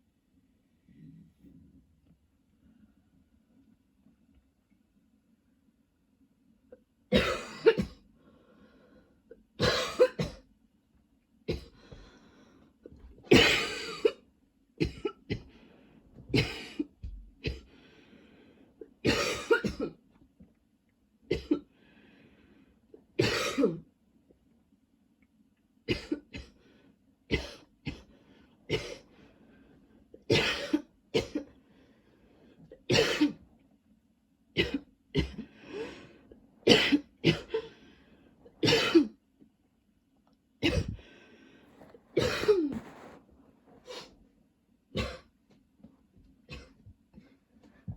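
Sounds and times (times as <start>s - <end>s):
woman coughing: 7.1s - 8.0s, 9.6s - 10.4s, 13.3s - 14.2s, 16.4s - 16.9s, 19.1s - 20.0s, 23.2s - 23.8s, 30.3s - 31.5s, 32.9s - 33.4s, 36.7s - 37.7s, 38.6s - 39.2s, 40.6s - 41.0s, 42.2s - 42.9s, 45.0s - 45.3s.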